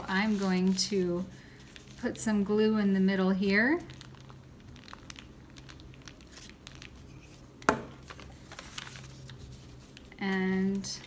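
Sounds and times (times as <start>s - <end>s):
paper rustling: 3.8s - 10.9s.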